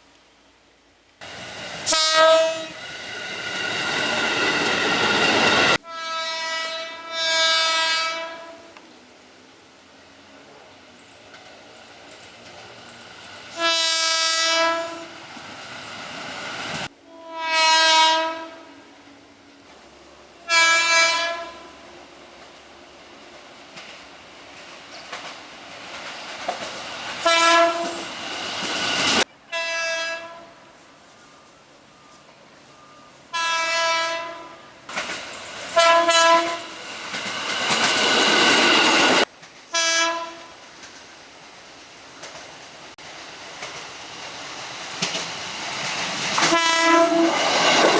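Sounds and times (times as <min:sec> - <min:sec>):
train running past: 0:01.2 - 0:47.9
train horn blasts: 0:01.8 - 0:02.8, 0:05.5 - 0:08.8, 0:13.5 - 0:15.2, 0:16.9 - 0:19.0, 0:20.4 - 0:21.9, 0:27.2 - 0:28.1, 0:29.5 - 0:30.6, 0:33.3 - 0:34.8, 0:35.7 - 0:36.8, 0:39.7 - 0:40.6, 0:46.4 - 0:47.6.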